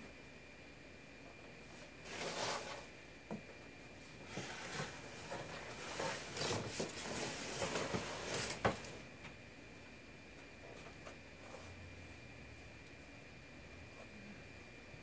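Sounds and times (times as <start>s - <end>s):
cardboard rustling and scraping: 1.6s - 2.9s, 4.0s - 9.0s.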